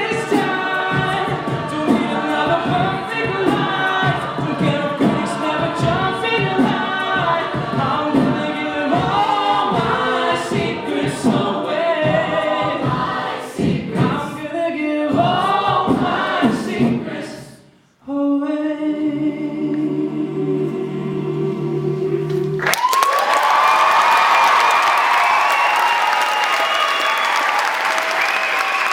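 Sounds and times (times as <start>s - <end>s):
a cappella group singing: 0.0s - 22.6s
applause and cheering: 22.6s - 28.9s.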